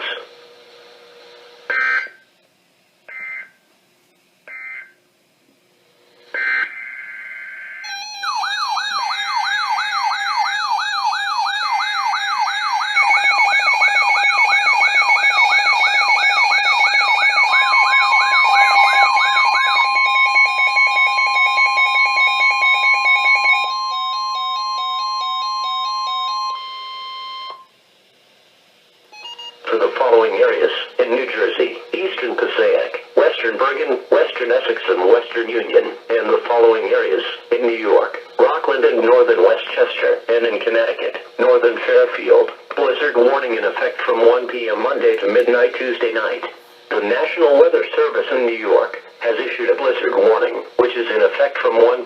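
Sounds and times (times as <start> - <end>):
warbling alarm siren: 1.7 - 2.2, 3.1 - 3.6, 4.5 - 5.0, 6.3 - 27.7
screeching data tone bursts: 6.3 - 27.7
rapid repeating beeps: 7.9 - 27.7
steady alert tone: 16.6 - 27.6.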